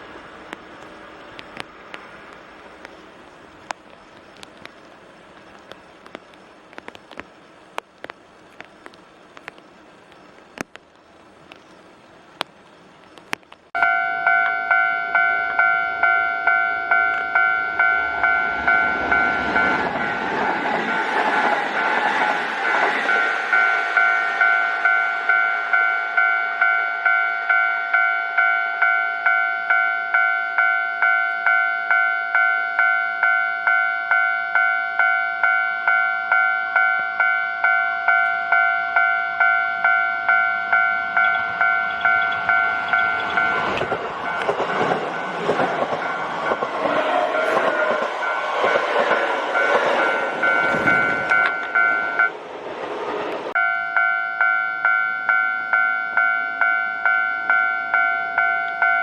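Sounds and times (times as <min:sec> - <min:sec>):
train rumbling: 0:00.0 - 0:59.0
level-crossing warning bell: 0:13.8 - 0:52.4, 0:53.5 - 0:59.0.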